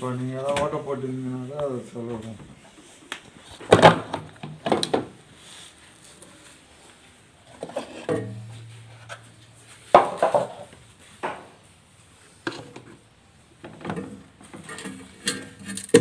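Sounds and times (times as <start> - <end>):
hard objects knocking and clattering: 9.9 - 11.6, 13.6 - 16.0.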